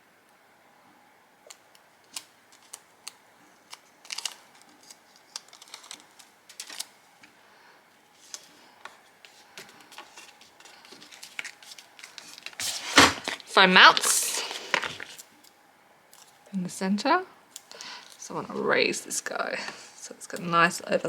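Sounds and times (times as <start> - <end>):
paper and craft supplies clicking: 1.5 - 6.9.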